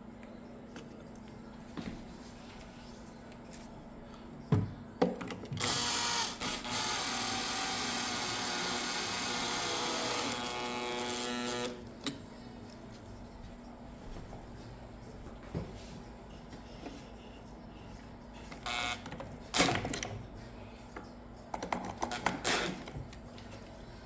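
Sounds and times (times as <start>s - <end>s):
electric power tool running: 5.6s - 11.8s, 18.6s - 19.0s.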